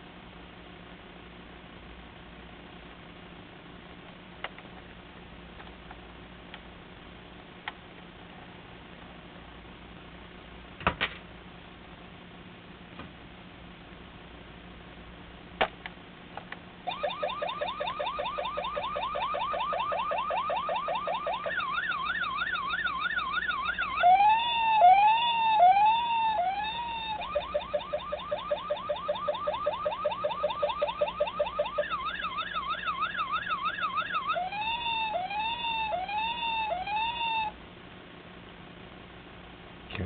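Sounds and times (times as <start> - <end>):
toy car electronic siren: 16.9 - 37.6.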